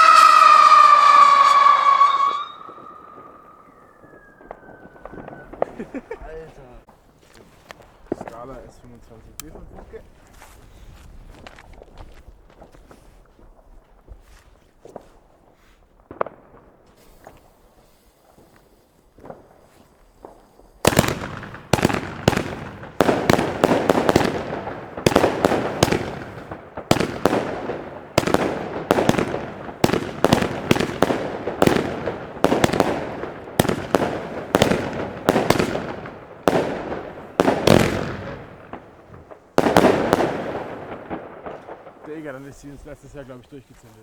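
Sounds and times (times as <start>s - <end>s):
firework battery bangs: 0.0s - 6.6s, 16.1s - 42.8s.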